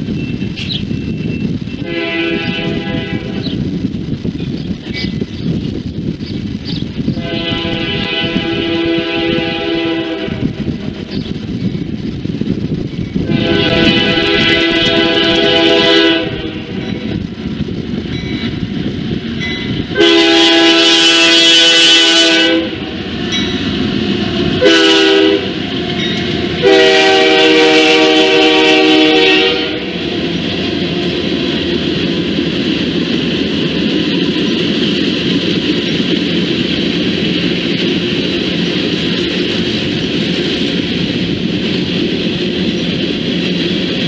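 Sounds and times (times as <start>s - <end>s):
train rumbling past on rails: 0.0s - 44.0s
locomotive air horn blasts: 1.8s - 3.4s, 7.2s - 10.6s, 13.2s - 17.0s, 19.9s - 23.0s, 24.6s - 25.6s, 26.6s - 30.0s.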